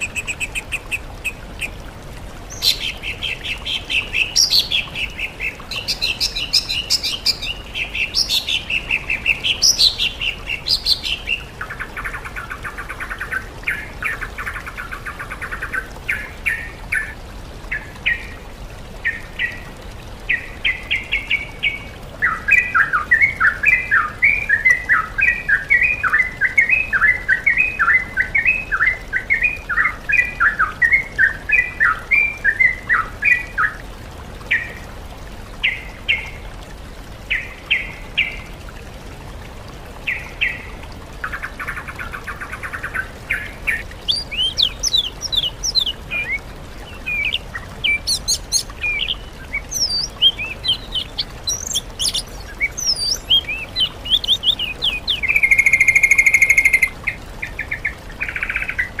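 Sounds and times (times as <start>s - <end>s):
songbird chirping: 42.7s - 59.0s
buzzy bird trill: 49.7s - 56.9s.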